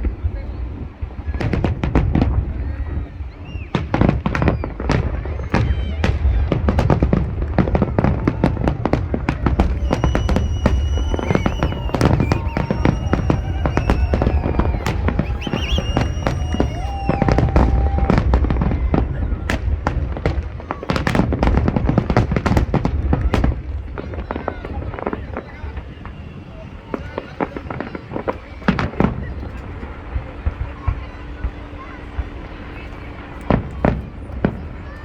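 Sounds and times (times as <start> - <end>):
fireworks bangs and crackles: 0.0 - 35.0
whistling fireworks: 0.0 - 35.0
low rumble of booms: 3.8 - 23.8.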